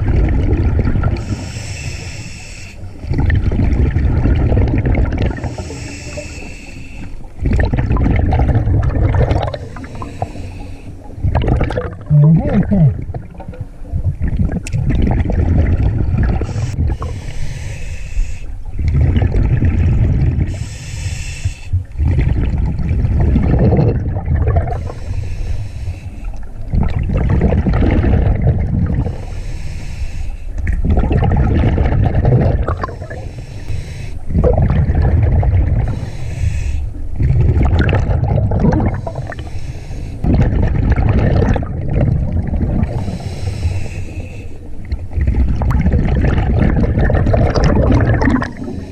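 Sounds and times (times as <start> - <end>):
exhaled bubbles rumbling: 0.0 - 1.6, 2.8 - 17.4, 18.6 - 20.8, 21.7 - 25.4, 26.2 - 29.5, 30.5 - 39.6, 40.2 - 48.9
diver breathing through regulator: 1.1 - 3.0, 5.3 - 7.4, 9.4 - 11.2, 16.4 - 18.8, 20.5 - 21.8, 24.7 - 26.5, 29.0 - 30.7, 32.7 - 34.4, 35.8 - 37.1, 38.8 - 40.3, 42.8 - 44.9, 48.4 - 48.9.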